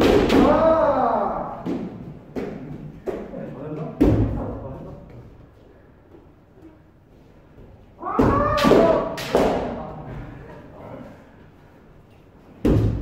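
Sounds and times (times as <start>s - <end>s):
bamboo swords hitting: 0.0s - 0.8s, 8.1s - 9.8s, 12.6s - 13.0s
loud shouts: 0.3s - 1.6s, 8.0s - 9.8s.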